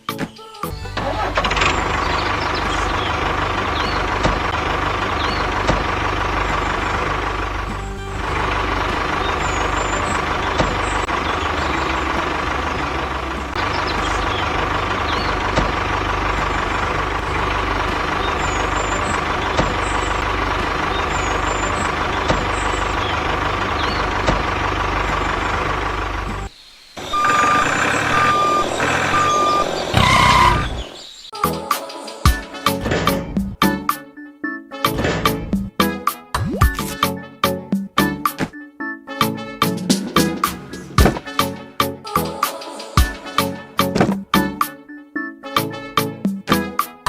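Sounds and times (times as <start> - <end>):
heavy vehicle engine running: 0.7 - 31.0, 32.7 - 33.6, 39.8 - 42.3
short beeps: 27.1 - 30.7.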